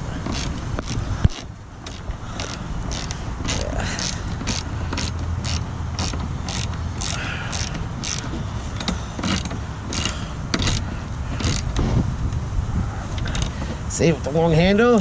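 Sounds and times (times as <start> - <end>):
wind rumble on microphone: 0.0 - 15.0
ratchet clicking: 0.2 - 11.8.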